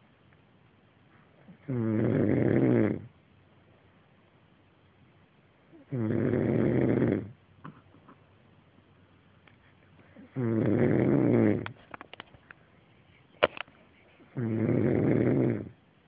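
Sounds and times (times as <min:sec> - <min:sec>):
man snoring loudly: 0:01.6 - 0:03.1, 0:05.9 - 0:07.4, 0:10.4 - 0:11.6, 0:14.4 - 0:15.7.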